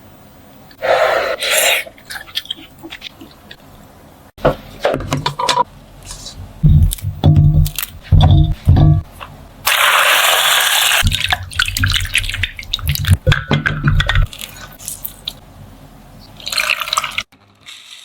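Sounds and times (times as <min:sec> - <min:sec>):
liquid pouring: 0:11.0 - 0:14.8, 0:16.4 - 0:17.9.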